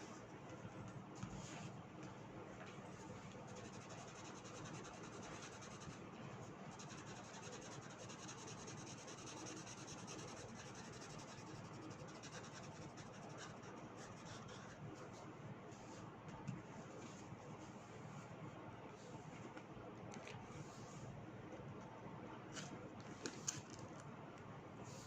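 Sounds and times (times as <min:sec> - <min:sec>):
writing tool scratching on paper: 0:03.5 - 0:06.0, 0:06.8 - 0:14.8.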